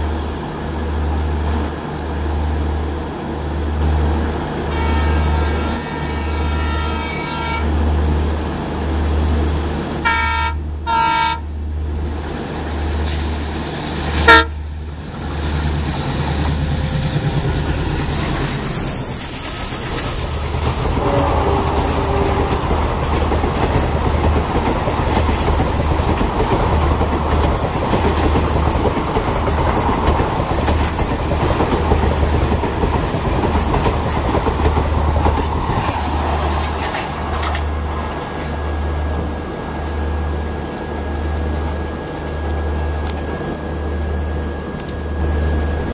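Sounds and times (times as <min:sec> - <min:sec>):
train coaches clattering on rails: 0:04.2 - 0:43.8
diesel locomotive horn blasts: 0:04.6 - 0:08.0, 0:10.0 - 0:11.7, 0:14.1 - 0:14.8, 0:20.8 - 0:22.9.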